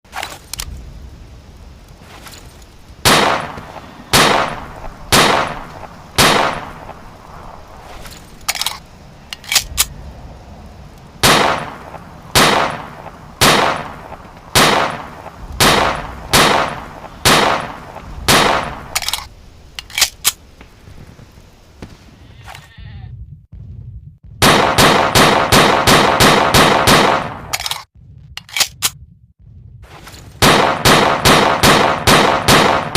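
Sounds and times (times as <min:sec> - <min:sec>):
pistol shots: 0:03.0 - 0:06.9, 0:11.2 - 0:19.2, 0:24.4 - 0:27.4, 0:30.4 - 0:32.9
light mechanical clicks: 0:08.1 - 0:10.0.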